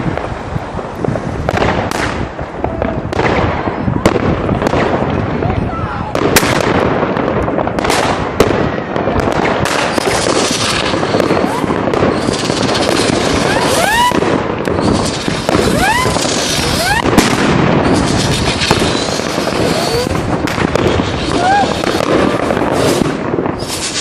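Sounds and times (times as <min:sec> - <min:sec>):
fireworks bangs: 0:00.0 - 0:24.0
fireworks crackling: 0:00.0 - 0:24.0
rising firework whistles: 0:09.4 - 0:24.0.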